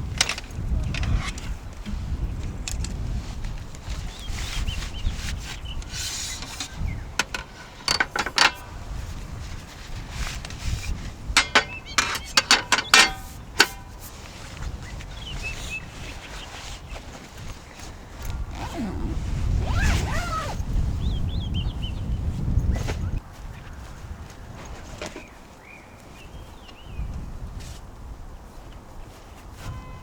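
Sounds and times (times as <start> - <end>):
wind rumbling on microphone: 0.0 - 30.0
sharp clicks and knocks: 6.4 - 8.7, 11.4 - 14.0.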